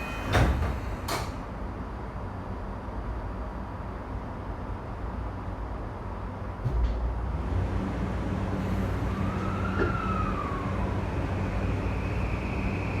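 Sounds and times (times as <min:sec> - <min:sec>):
train wheels and motors rumbling: 0:00.0 - 0:13.0.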